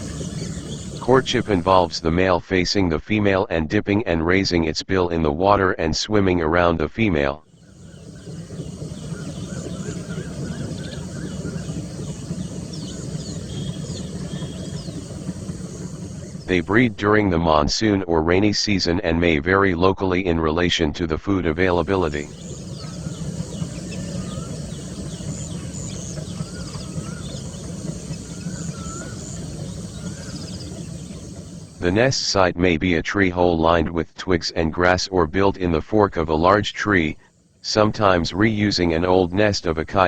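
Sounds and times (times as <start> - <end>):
bird whistles: 0.0 - 1.4, 7.6 - 16.5, 22.3 - 31.8
high bird chirps: 0.0 - 1.9, 7.5 - 16.6, 21.8 - 31.8
steady low rumble: 0.0 - 40.0.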